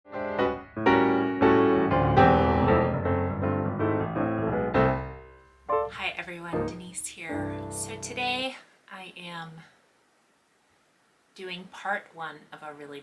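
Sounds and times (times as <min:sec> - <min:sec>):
piano chords and notes: 0:00.1 - 0:08.4.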